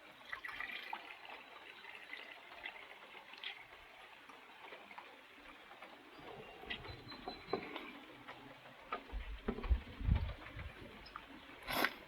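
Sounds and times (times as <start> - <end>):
faint trickle of liquid: 0.0 - 12.0
small irregular ticks: 2.4 - 12.0.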